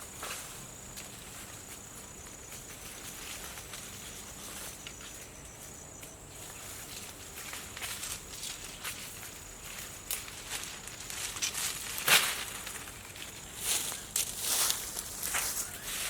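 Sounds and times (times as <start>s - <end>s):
insect trilling: 13.7s - 16.0s.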